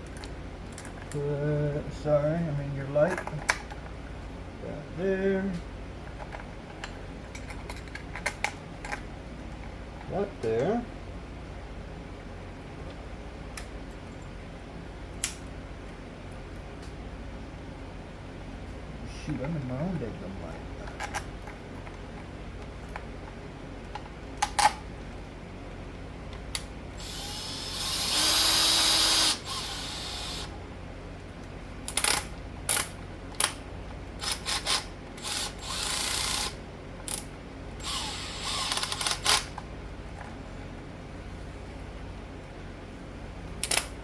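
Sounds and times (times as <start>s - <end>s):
power driver whirring: 27.0s - 30.6s, 34.2s - 39.6s.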